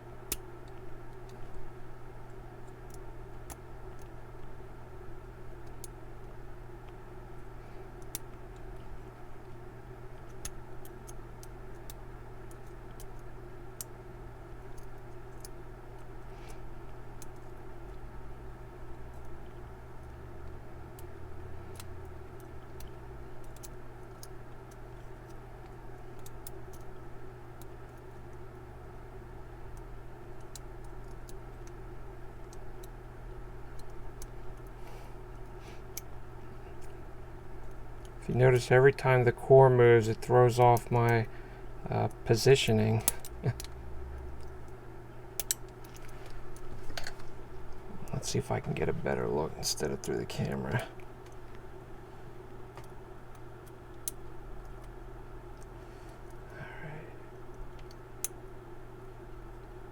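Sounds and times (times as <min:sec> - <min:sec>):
steady low hum: 0:00.0 - 0:59.9
lock pick clicks and ticks: 0:45.4 - 0:45.7.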